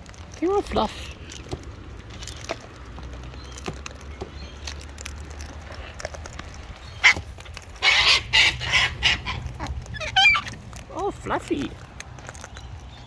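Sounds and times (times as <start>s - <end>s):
cockatoo screeching: 6.9s - 7.2s, 7.8s - 10.6s.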